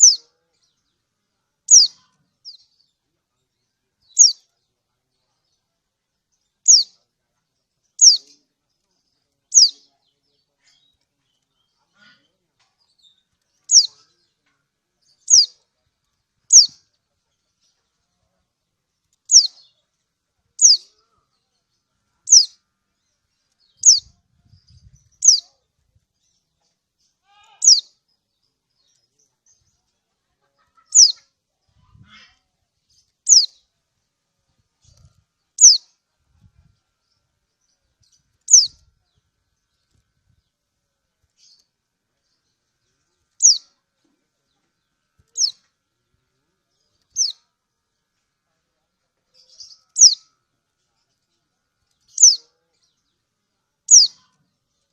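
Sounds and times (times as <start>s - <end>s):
bird chirps falling in pitch: 38.5s - 38.8s.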